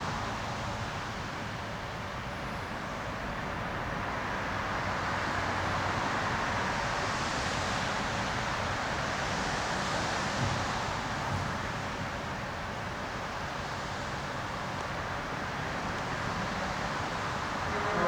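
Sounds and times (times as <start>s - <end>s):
road traffic rush: 14.2s - 18.0s.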